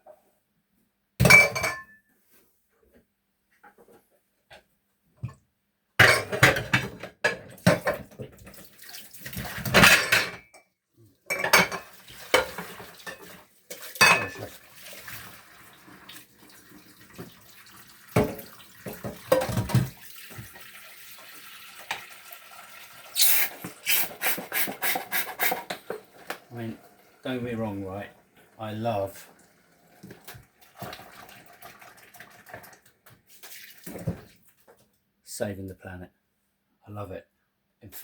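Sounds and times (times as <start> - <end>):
dishes clattering in a sink: 1.2 - 2.0, 6.0 - 10.6, 11.3 - 15.3, 18.1 - 20.6, 23.6 - 26.5, 33.5 - 34.8.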